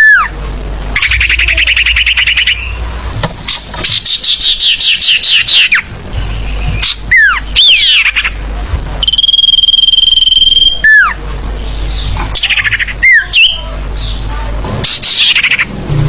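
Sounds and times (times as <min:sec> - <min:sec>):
songbird whistling and trilling: 0:01.0 - 0:02.8, 0:03.8 - 0:08.3, 0:09.0 - 0:11.2, 0:11.9 - 0:13.6.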